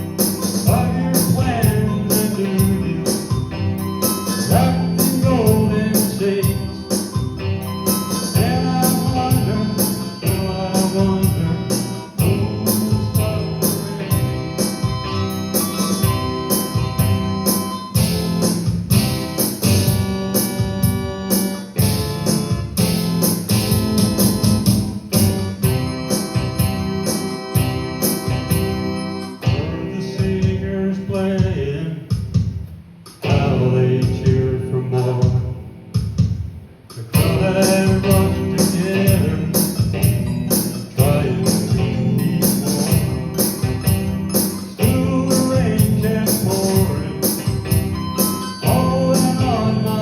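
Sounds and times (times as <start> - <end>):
drums keeping a steady beat: 0.0 - 50.0
live band playing: 0.0 - 50.0
person singing: 0.6 - 3.4, 4.4 - 7.1, 8.1 - 14.8, 33.2 - 35.6, 37.0 - 39.9, 40.9 - 43.7, 44.7 - 47.7, 48.4 - 50.0.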